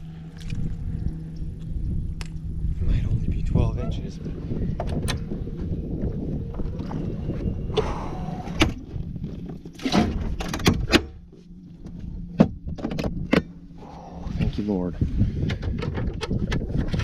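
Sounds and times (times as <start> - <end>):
wind noise on microphone: 0.0 - 11.2, 11.8 - 17.0
knocks and thumps on boat: 4.6 - 7.8, 8.5 - 13.6, 15.2 - 17.0.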